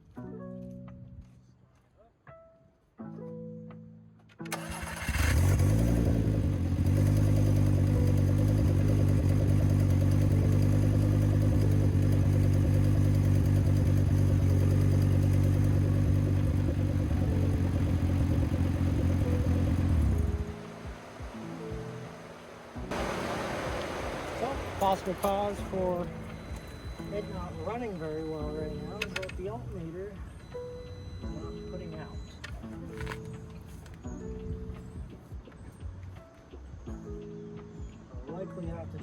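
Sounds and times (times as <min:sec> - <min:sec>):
car engine starting and idling: 0:04.4 - 0:34.0.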